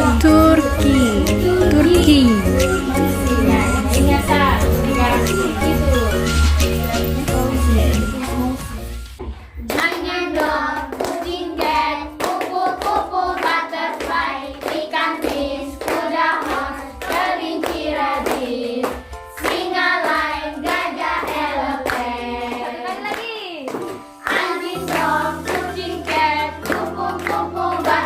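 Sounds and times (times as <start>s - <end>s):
children singing: 0.0s - 8.6s, 9.8s - 23.1s, 24.2s - 28.0s
clapping along to the beat: 9.6s - 28.0s.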